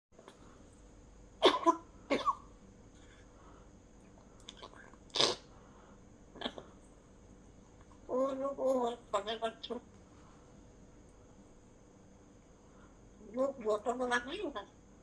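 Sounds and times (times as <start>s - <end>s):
person coughing: 1.4s - 2.5s.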